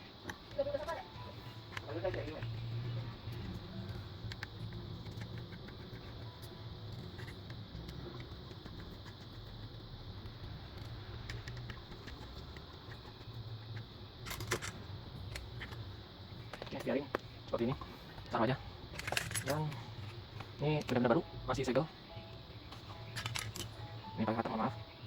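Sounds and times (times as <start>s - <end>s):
steady low hum: 0.0s - 25.0s
computer parts clicking: 1.6s - 9.8s, 10.4s - 15.8s, 18.9s - 21.7s, 23.0s - 24.7s.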